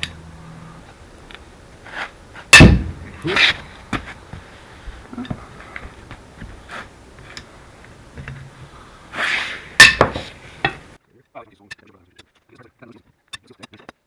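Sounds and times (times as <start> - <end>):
sharp metal strike: 2.5 - 3.2, 9.8 - 10.2
short scrape: 3.2 - 3.8, 9.1 - 10.7.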